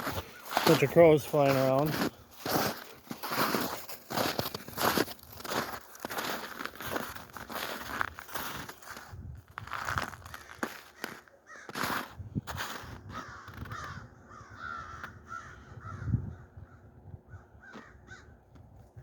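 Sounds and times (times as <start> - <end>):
crows cawing: 0.0 - 0.8, 10.2 - 12.1, 13.1 - 18.4.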